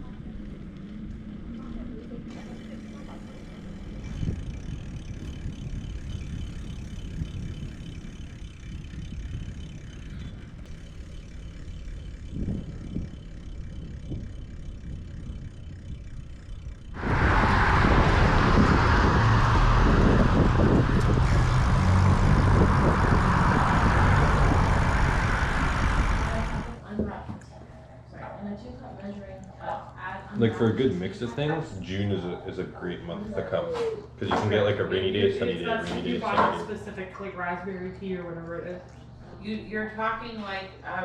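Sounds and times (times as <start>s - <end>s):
vehicle engine rumble: 0.0s - 27.2s
loud rushing noise: 17.0s - 26.8s.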